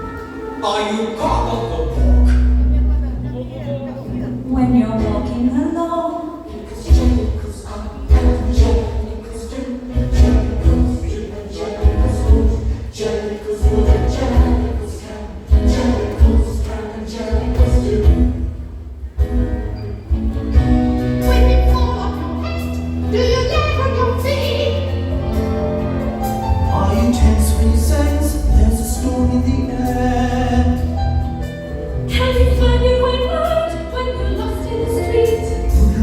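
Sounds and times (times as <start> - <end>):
instrumental accompaniment: 0.0 - 5.6
group of voices singing: 6.2 - 18.9.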